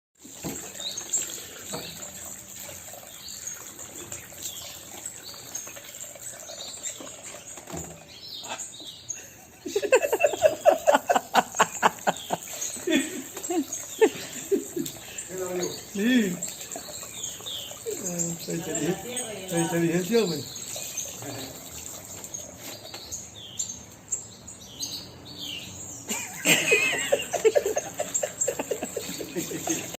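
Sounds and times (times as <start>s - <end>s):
bird chirps and calls: 11.6s - 29.9s.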